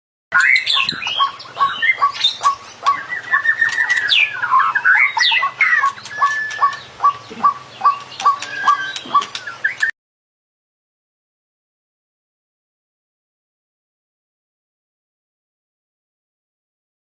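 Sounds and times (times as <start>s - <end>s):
repeating short bird notes: 0.3s - 9.9s
bird singing whistles: 0.4s - 9.9s.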